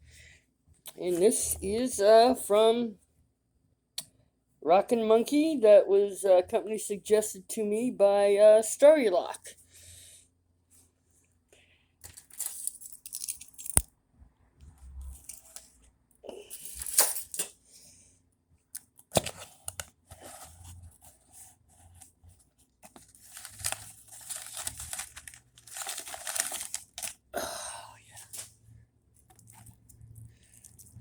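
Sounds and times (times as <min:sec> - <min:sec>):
wrapping crinkling: 0:19.2 - 0:27.3, 0:29.2 - 0:31.0
package being torn open: 0:23.1 - 0:27.2.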